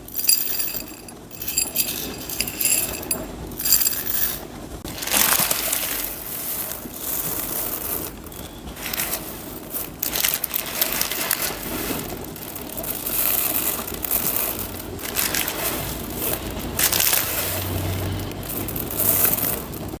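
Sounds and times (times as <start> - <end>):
dried beans being poured: 0.0 - 20.0.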